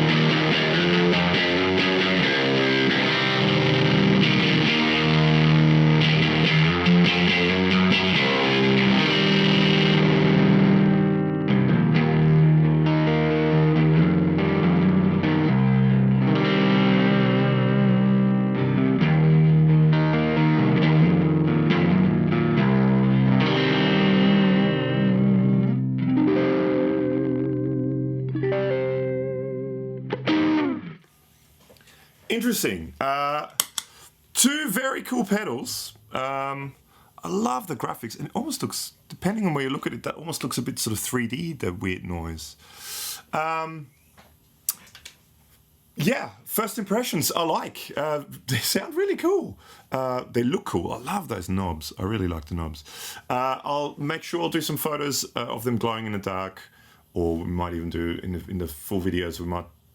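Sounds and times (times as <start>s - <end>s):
electric guitar chords: 0.0s - 31.1s.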